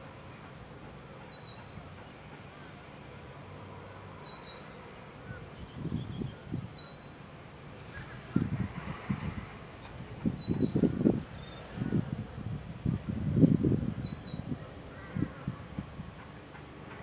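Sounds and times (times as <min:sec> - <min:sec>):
high insect-like whine: 0:00.0 - 0:17.0
bird whistled call notes: 0:01.2 - 0:01.7, 0:04.2 - 0:07.2, 0:10.3 - 0:10.8, 0:13.9 - 0:14.5.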